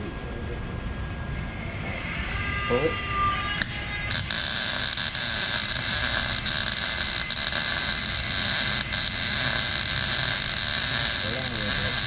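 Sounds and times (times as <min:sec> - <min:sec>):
welder arc frying hiss: 0:03.6 - 0:12.0.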